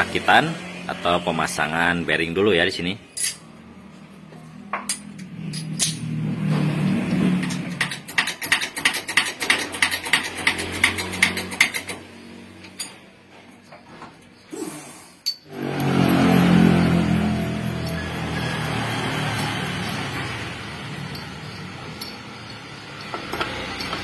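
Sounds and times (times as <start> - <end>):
bearing clicks: 17.3 - 24.0.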